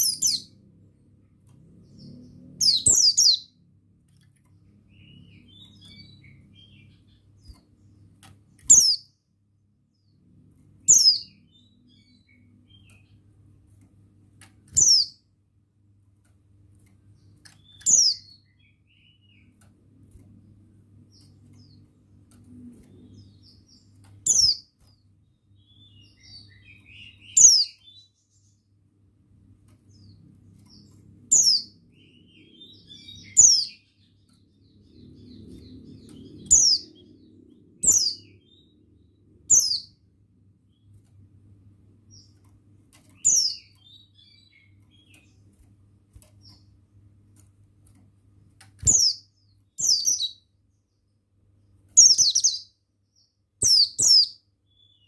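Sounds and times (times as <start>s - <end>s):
low steady hum: 0.0s - 55.0s
faint bird twittering: 1.8s - 3.6s, 29.9s - 40.0s, 48.8s - 51.2s, 52.0s - 55.0s.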